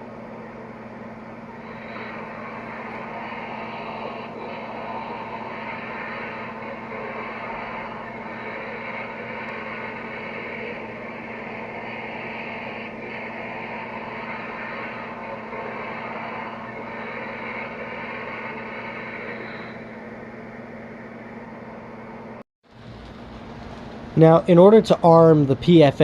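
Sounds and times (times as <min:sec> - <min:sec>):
model steam locomotive hiss: 0:01.6 - 0:19.8.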